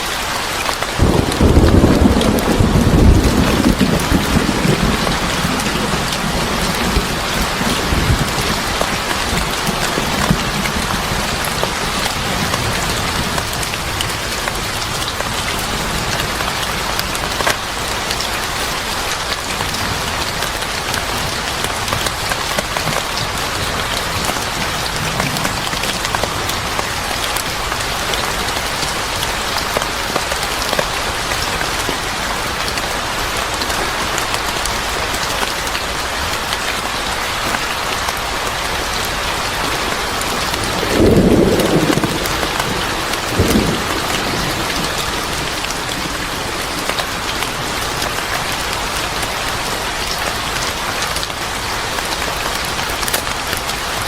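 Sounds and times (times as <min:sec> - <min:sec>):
heavy rain pattering: 0:00.0 - 0:54.0
thunder rumble: 0:01.0 - 0:14.4, 0:39.8 - 0:48.2.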